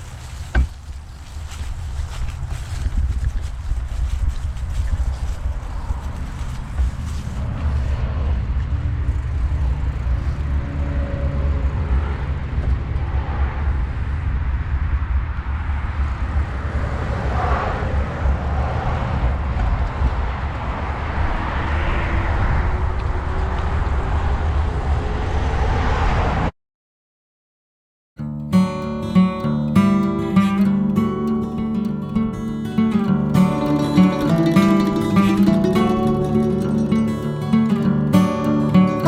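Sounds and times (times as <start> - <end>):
wind rumble on microphone: 0.0 - 26.5.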